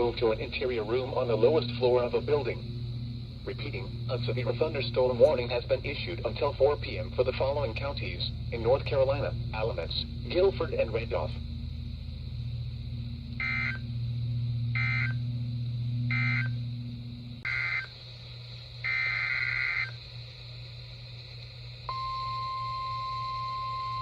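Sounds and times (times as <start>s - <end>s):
steady high alarm tone: 0.0s - 18.0s, 18.8s - 20.0s, 21.9s - 24.0s
screechy digital data bursts: 13.4s - 14.0s, 14.7s - 15.3s, 16.0s - 16.7s, 17.4s - 18.0s, 18.8s - 20.0s.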